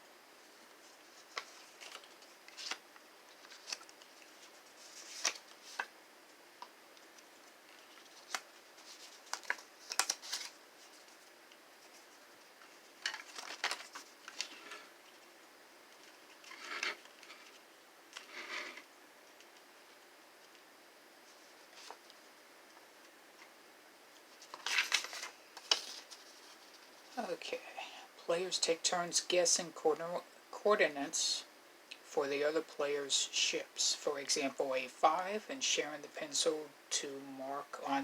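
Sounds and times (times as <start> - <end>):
paper rustling: 0.6 - 5.9, 7.0 - 15.3, 15.9 - 20.6, 21.2 - 22.3, 24.2 - 27.2.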